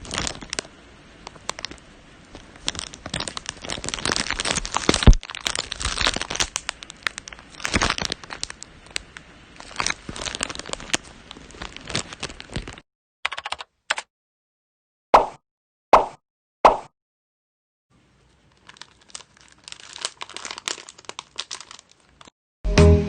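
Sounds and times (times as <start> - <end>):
eggshell crackling and crunching: 0.0 - 12.8, 18.5 - 22.3.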